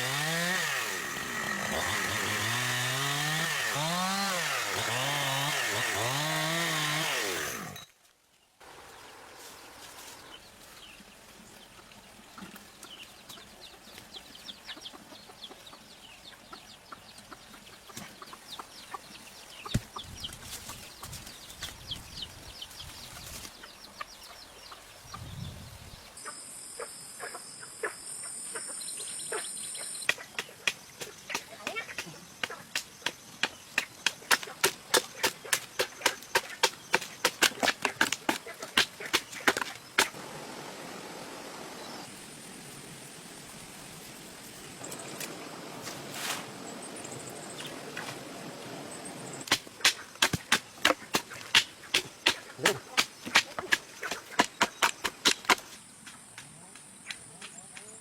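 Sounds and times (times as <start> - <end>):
chickens clucking: 14.7 - 21.2, 49.4 - 55.7
tool striking wood: 49.4 - 55.7.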